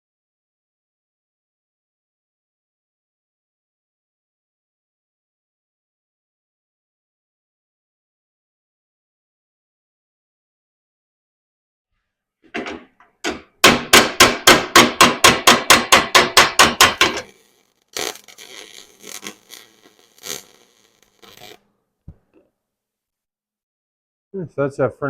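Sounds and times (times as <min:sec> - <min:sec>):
hammer striking steel: 0:12.5 - 0:17.3.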